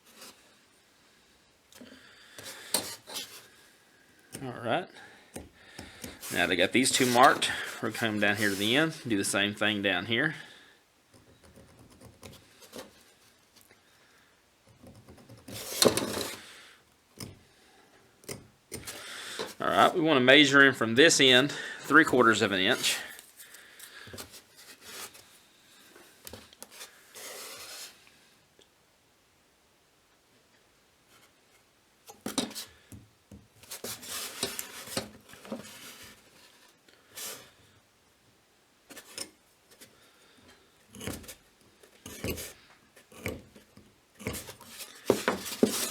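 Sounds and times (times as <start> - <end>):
tools scraping clatter: 2.4 - 3.5, 6.0 - 9.0, 15.4 - 16.5, 33.7 - 37.4, 44.2 - 45.9
marking tool scratching on steel: 6.1 - 8.8, 42.0 - 43.5.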